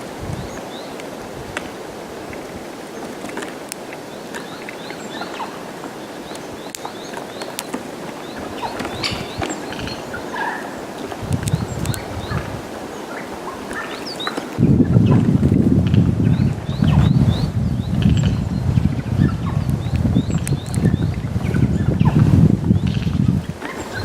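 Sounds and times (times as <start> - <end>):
wind gusting on microphone: 0.0 - 24.0
birds chirping: 2.9 - 14.6, 22.8 - 24.0
tits calling: 2.9 - 14.6, 22.8 - 24.0.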